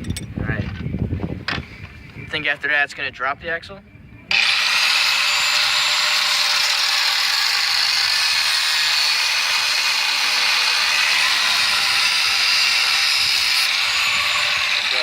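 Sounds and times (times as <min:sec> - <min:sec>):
angle grinder cutting metal: 0:04.3 - 0:15.0.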